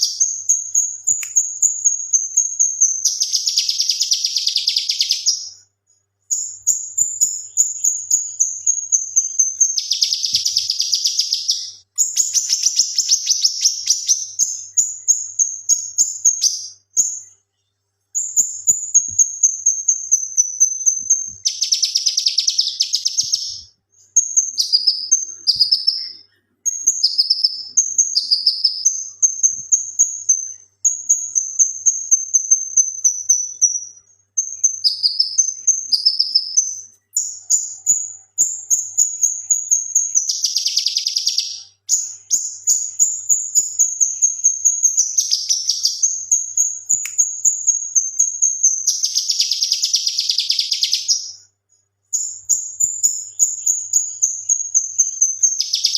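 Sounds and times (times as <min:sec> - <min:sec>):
bird singing high chattering phrases: 0:00.0 - 0:05.6, 0:06.3 - 0:17.3, 0:18.2 - 0:51.4, 0:52.1 - 0:55.9.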